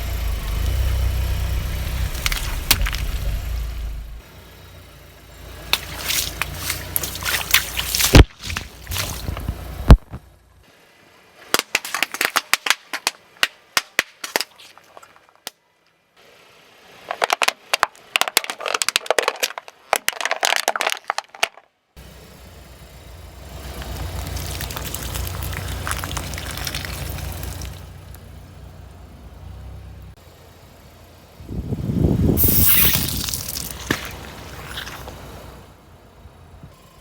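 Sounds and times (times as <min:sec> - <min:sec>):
car engine low rumble: 0:00.0 - 0:10.8, 0:22.0 - 0:37.0
objects crunching under tyre: 0:01.8 - 0:03.6, 0:05.7 - 0:10.3, 0:17.0 - 0:21.7, 0:23.6 - 0:27.9, 0:32.4 - 0:35.7.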